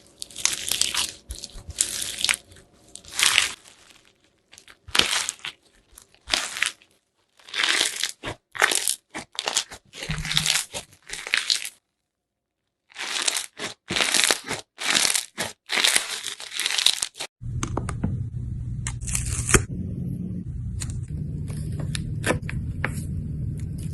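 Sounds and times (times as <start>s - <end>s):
slime crackling and tearing: 0.0s - 11.8s, 12.8s - 17.3s, 19.0s - 19.6s
steady low hum: 17.4s - 23.9s.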